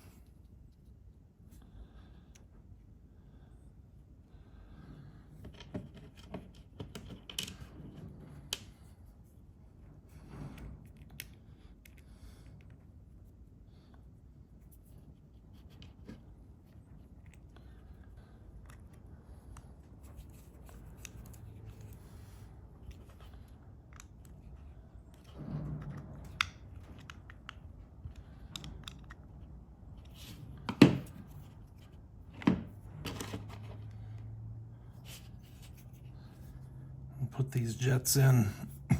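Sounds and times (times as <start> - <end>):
light clicks of metal parts: 15.5 - 32.0.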